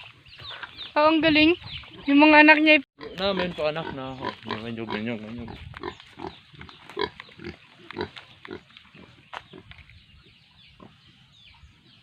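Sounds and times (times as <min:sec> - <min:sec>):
pigs grunting and squealing: 0:03.0 - 0:09.7.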